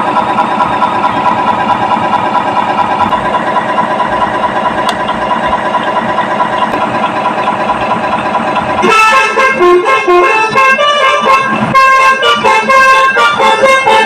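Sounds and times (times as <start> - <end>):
simulated truck engine idling: 0.0 - 14.0
musical horn tune: 8.8 - 14.0.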